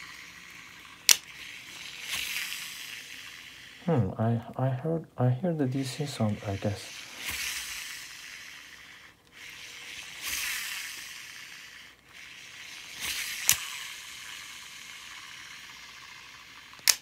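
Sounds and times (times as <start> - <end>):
fishing reel spool spinning: 0.0 - 4.2, 6.0 - 17.0
sharp click: 1.0 - 1.3, 13.4 - 13.8, 16.8 - 17.0.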